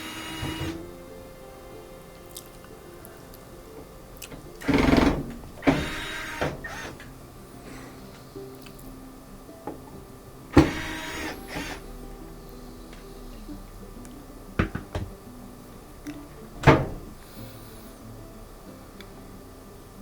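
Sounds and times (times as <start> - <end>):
power screwdriver whirring: 0.0 - 0.8, 4.6 - 7.1, 10.6 - 11.8.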